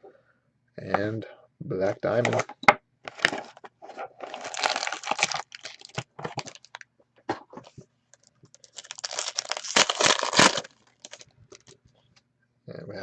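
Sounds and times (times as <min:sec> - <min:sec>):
wrapper crinkling and tearing: 0:04.2 - 0:06.8, 0:08.1 - 0:11.8.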